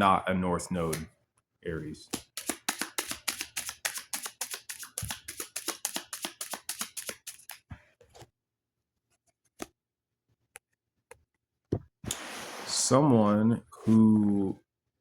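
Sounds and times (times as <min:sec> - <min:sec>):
cards being shuffled: 0:02.1 - 0:08.3.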